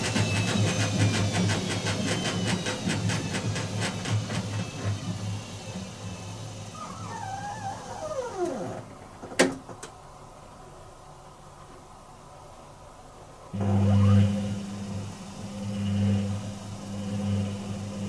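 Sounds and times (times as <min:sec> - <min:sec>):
washing machine drum spinning down: 0:00.0 - 0:09.2.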